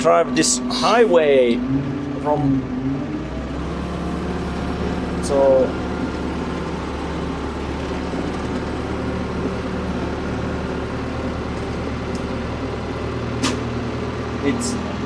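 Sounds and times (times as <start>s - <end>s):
excavator engine running: 3.0s - 15.0s.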